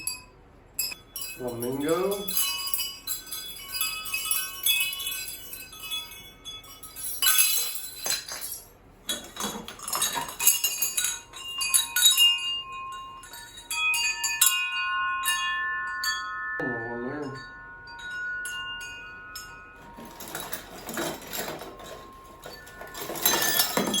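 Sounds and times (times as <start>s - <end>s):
wind chimes clinking: 0.0s - 24.0s
rustling: 18.3s - 24.0s.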